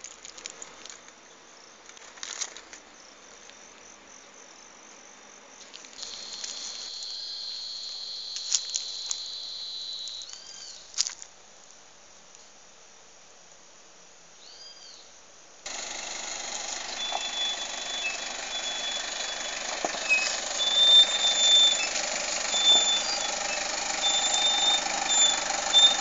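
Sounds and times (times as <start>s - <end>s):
insect buzzing: 6.0s - 10.8s.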